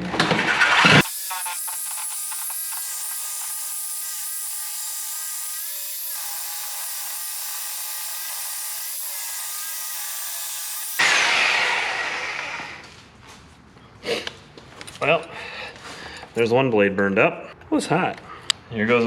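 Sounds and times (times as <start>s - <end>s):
power saw cutting metal pipe: 0.0s - 12.9s.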